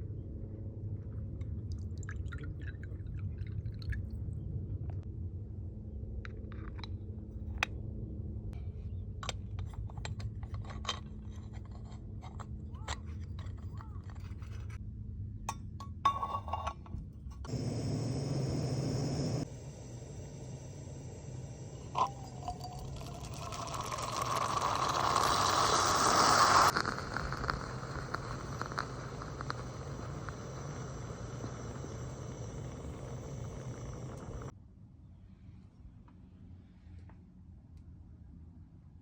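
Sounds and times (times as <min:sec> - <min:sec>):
low rumble of flame: 0:00.0 - 0:15.2, 0:16.0 - 0:34.5
espresso pot hissing: 0:17.5 - 0:34.5.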